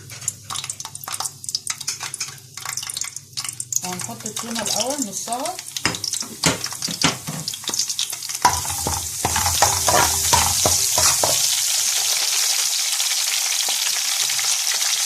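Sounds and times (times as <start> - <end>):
vegetables sizzling in hot oil: 0.0 - 15.0
vegetable pieces knocking in pan: 5.8 - 12.3.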